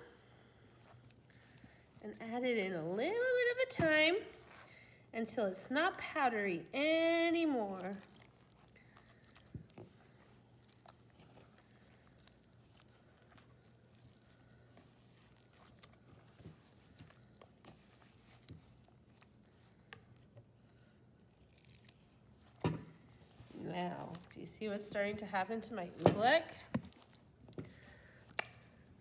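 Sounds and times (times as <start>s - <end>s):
low steady hum: 0.0s - 29.0s.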